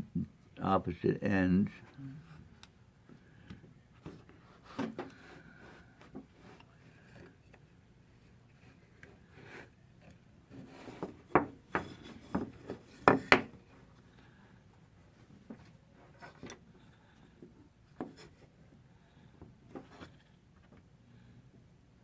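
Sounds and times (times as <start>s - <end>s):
knocks on wooden boards: 11.3s - 13.5s.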